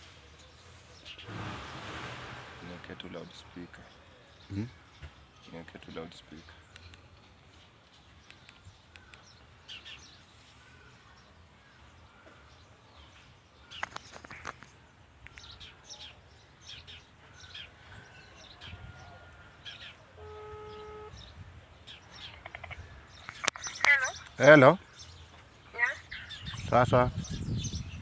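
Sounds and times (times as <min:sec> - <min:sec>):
birds chirping: 0:00.2 - 0:28.0
phone ringing tone: 0:20.2 - 0:21.2.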